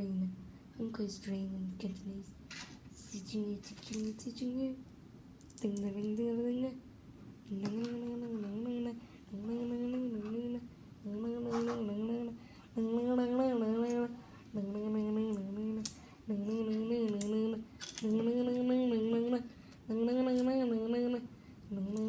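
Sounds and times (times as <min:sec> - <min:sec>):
person humming a wordless tune: 0:05.6 - 0:06.8, 0:07.5 - 0:22.0.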